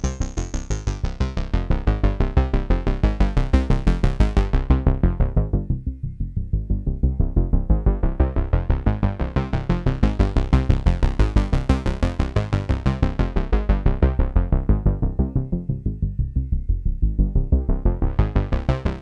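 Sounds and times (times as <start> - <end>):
synthesizer bass sequence: 0.0 - 19.0.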